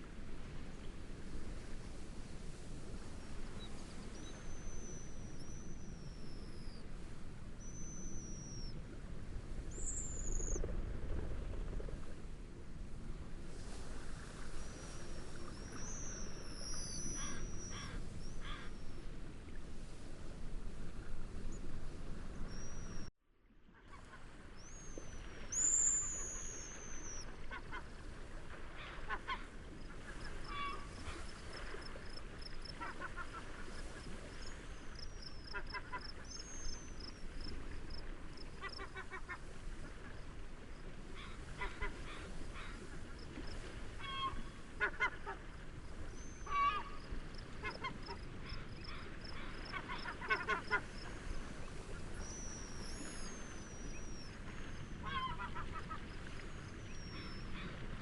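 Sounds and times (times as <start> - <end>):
wind and waves rushing: 0.0 - 23.1, 24.0 - 58.0
waterbirds calling: 3.2 - 6.9, 7.6 - 8.8, 9.7 - 10.6, 14.6 - 19.6, 23.8 - 58.0
high whistled bird calls: 7.6 - 8.7, 24.6 - 27.2.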